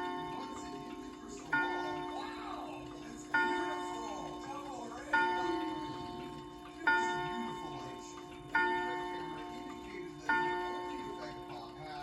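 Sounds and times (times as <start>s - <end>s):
clock chime striking: 0.0s - 12.0s.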